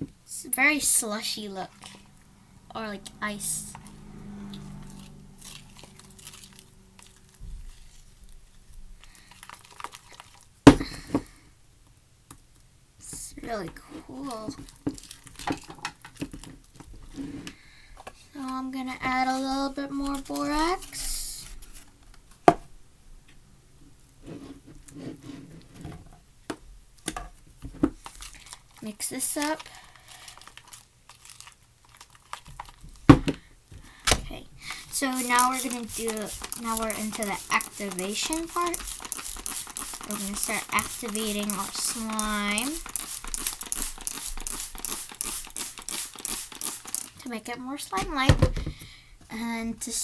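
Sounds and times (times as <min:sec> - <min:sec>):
slime crackling and crunching: 0:04.8 - 0:08.5, 0:28.0 - 0:32.8, 0:34.7 - 0:45.1.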